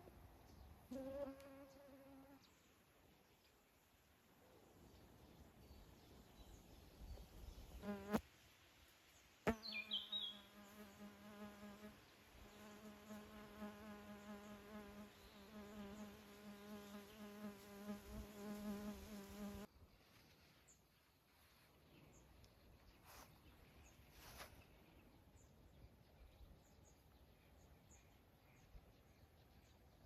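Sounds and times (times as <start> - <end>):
flying insect buzzing: 0.9 - 2.4, 7.8 - 8.2, 9.4 - 19.7.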